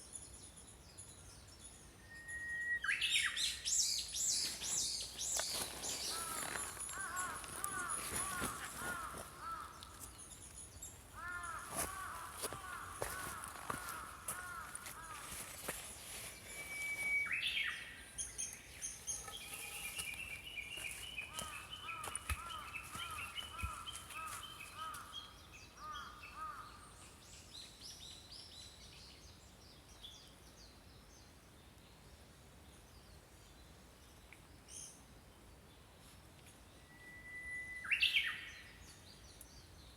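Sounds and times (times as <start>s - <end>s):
songbirds chirping and singing: 2.8s - 28.8s.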